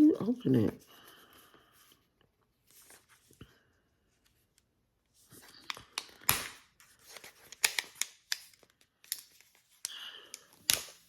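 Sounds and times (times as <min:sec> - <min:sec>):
faint plastic rustling: 0:00.5 - 0:11.0
sharp plastic clicks and cracks: 0:07.5 - 0:11.0.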